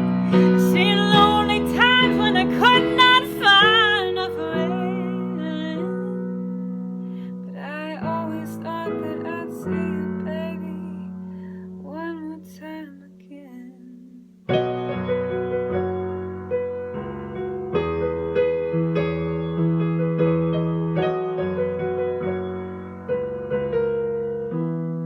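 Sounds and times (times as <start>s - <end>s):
piano playing chords: 0.0s - 12.4s, 14.5s - 25.0s
person singing: 0.3s - 6.2s, 7.5s - 11.2s.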